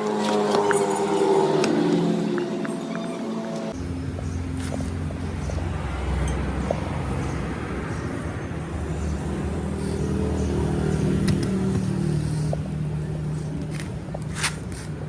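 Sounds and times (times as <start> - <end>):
motor humming: 0.0 - 3.8.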